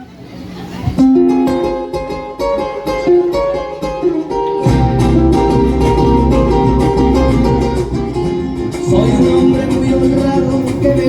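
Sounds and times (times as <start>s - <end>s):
latin dance music: 1.0s - 11.0s.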